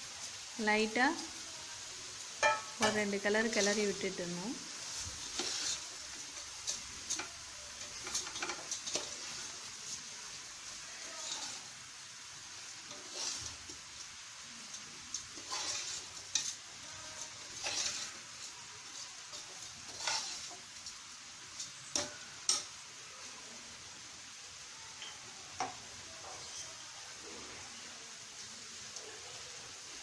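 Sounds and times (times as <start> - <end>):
faint sizzle: 0.0 - 30.0
spoon scraping a pot: 5.2 - 5.9, 6.6 - 9.5, 12.9 - 13.8, 15.2 - 16.6, 17.2 - 20.6.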